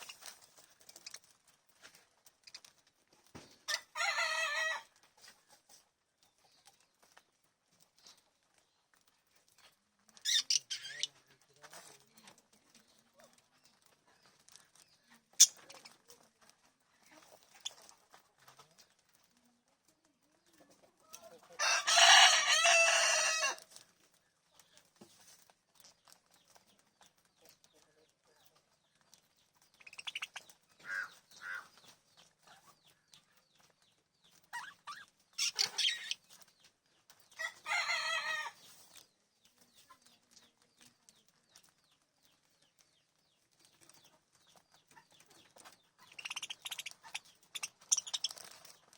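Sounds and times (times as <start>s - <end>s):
birds calling: 29.7s - 32.0s, 34.4s - 36.4s, 44.9s - 48.9s.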